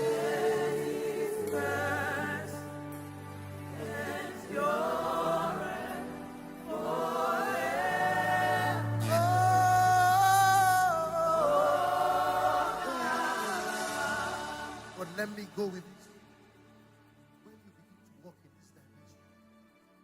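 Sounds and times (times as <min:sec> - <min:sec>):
voices singing long notes: 0:00.0 - 0:15.2
low sustained accompaniment: 0:00.0 - 0:19.9.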